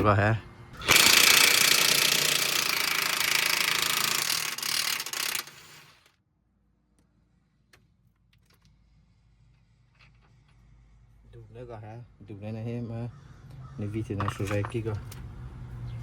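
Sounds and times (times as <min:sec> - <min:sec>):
impact wrench hammering: 0:00.8 - 0:05.8.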